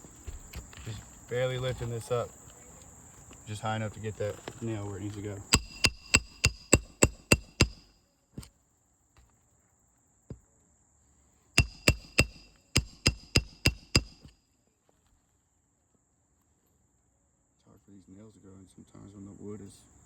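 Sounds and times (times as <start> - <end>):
high insect buzz: 0.0 - 14.4
hammer striking metal: 5.5 - 7.9, 11.6 - 14.3.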